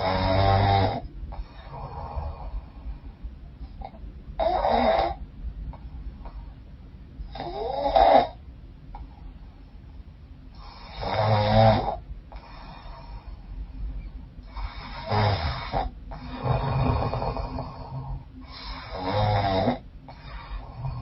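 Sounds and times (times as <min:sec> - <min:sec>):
woman snoring: 0:00.0 - 0:02.8, 0:03.8 - 0:05.2, 0:07.3 - 0:08.4, 0:10.6 - 0:13.4, 0:14.4 - 0:21.0.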